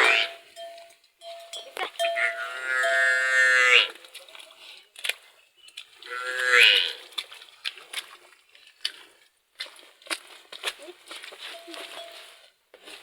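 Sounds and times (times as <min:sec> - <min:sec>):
livestock calling: 0:00.0 - 0:00.4, 0:01.8 - 0:03.9.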